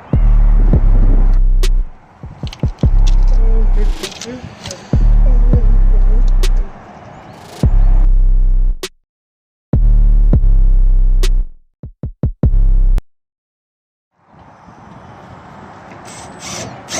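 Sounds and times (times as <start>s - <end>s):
electronic music with deep bass: 0.0s - 6.8s, 7.6s - 9.0s, 9.8s - 11.6s, 12.4s - 13.0s.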